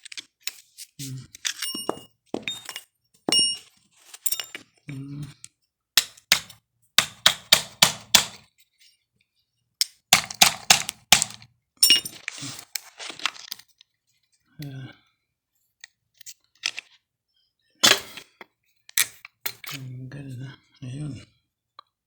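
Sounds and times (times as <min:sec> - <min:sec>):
metal knocks and clinks: 0:01.5 - 0:03.7.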